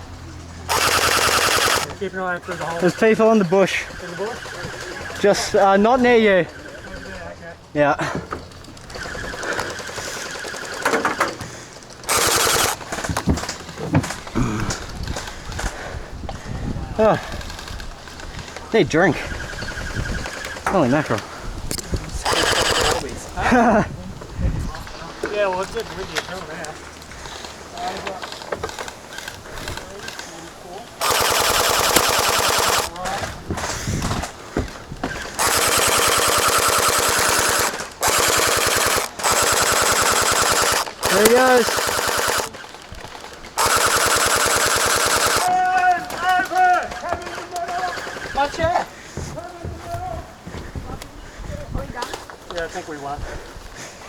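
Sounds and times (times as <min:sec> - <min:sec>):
gel blasters firing full auto: 0:00.7 - 0:05.5, 0:08.8 - 0:11.3, 0:12.1 - 0:12.8, 0:19.4 - 0:21.0, 0:22.2 - 0:23.1, 0:31.0 - 0:33.0, 0:35.2 - 0:42.6, 0:43.6 - 0:45.6.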